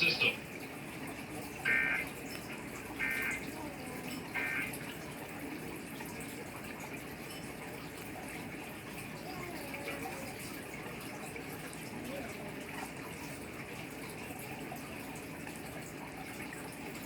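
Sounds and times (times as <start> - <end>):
radio hiss: 0.0 - 0.4.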